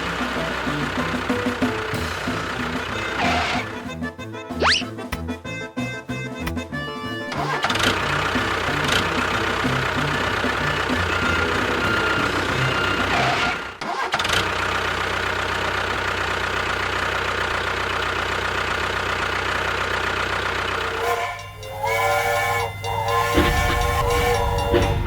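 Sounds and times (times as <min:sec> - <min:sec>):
music: 0:00.0 - 0:13.4, 0:21.0 - 0:25.0.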